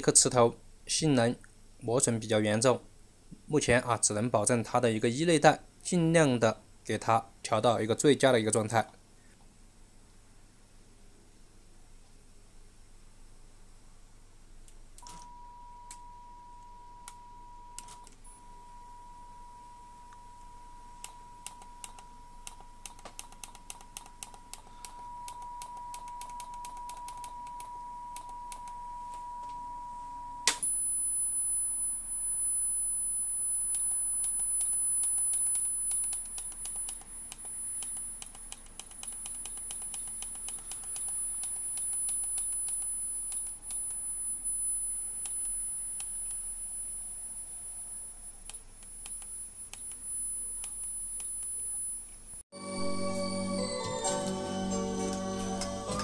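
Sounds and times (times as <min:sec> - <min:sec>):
calibration test tone: 0:15.0 - 0:24.0, 0:24.6 - 0:38.6, 0:39.5 - 0:53.6.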